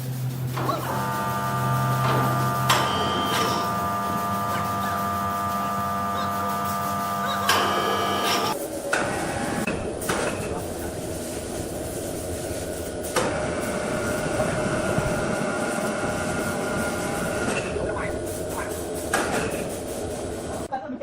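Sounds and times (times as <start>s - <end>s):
woodworking machine running: 0.4s - 9.7s.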